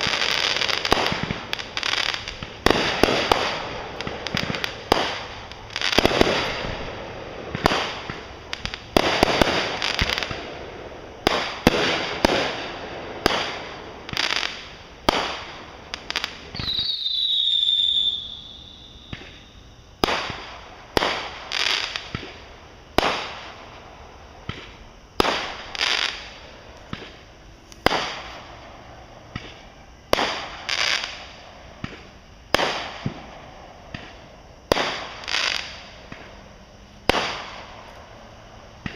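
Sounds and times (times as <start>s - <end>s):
fireworks banging: 0.0s - 38.9s
whistling firework: 0.0s - 38.9s.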